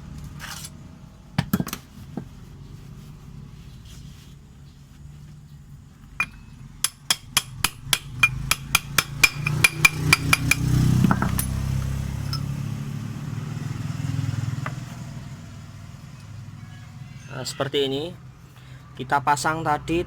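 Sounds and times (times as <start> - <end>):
hammer striking steel: 6.2 - 11.5.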